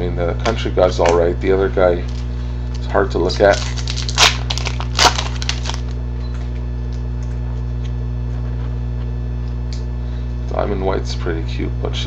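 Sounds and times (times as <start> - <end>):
low electrical hum: 0.0 - 12.0
trading cards being flipped: 3.4 - 6.0.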